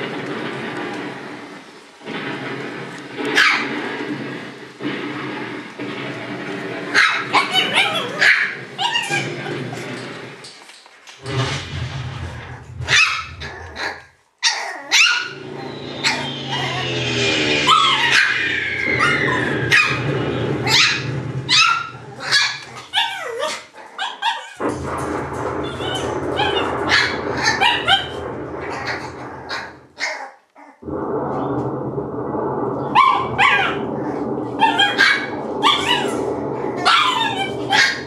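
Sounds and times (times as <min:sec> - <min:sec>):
steady low hum: 0:15.3 - 0:22.9, 0:24.6 - 0:30.0, 0:30.8 - 0:38.0.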